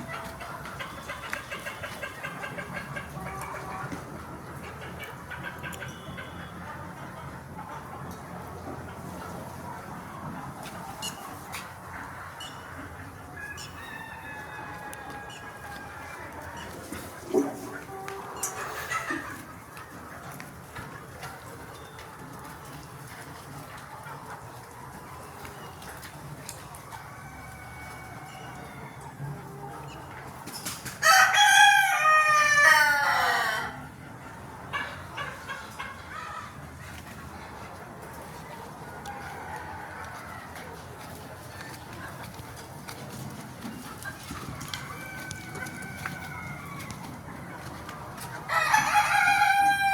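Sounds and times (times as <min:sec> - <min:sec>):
chickens calling: 0:00.0 - 0:49.9
chicken crowing: 0:13.4 - 0:19.4, 0:26.8 - 0:29.1, 0:31.0 - 0:33.9, 0:44.4 - 0:49.9.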